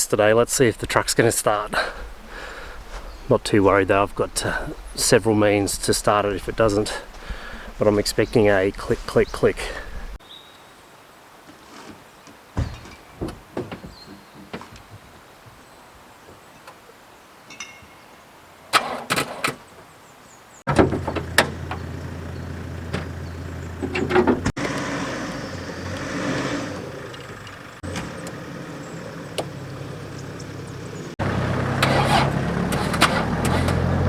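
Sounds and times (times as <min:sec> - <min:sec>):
starter motor cranking: 0:31.2 - 0:34.0.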